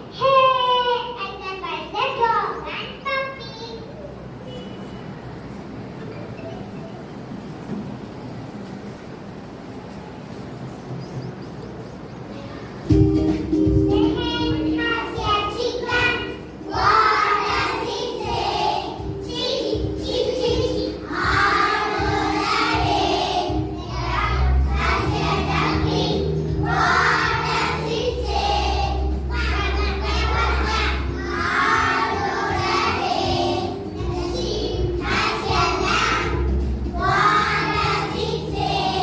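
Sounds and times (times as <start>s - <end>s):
recorded backing music: 12.3s - 39.0s
children singing together: 14.0s - 39.0s.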